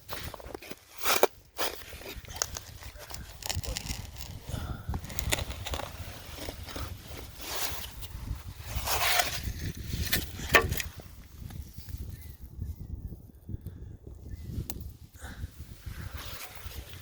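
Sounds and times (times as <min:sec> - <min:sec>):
digging in wet sand: 0:00.1 - 0:11.0.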